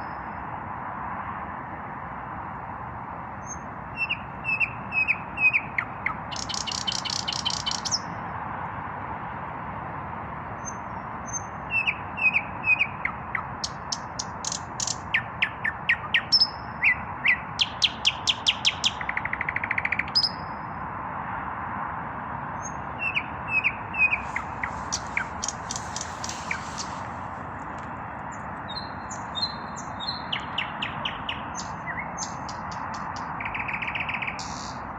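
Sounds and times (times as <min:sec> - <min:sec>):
nightingale singing: 0:03.4 - 0:08.2, 0:10.6 - 0:20.7, 0:22.6 - 0:34.9.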